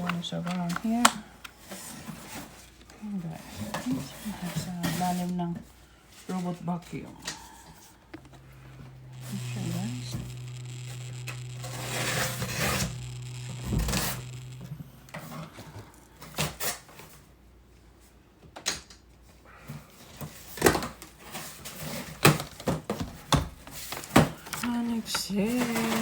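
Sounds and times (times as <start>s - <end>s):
low hum: 8.2s - 16.1s.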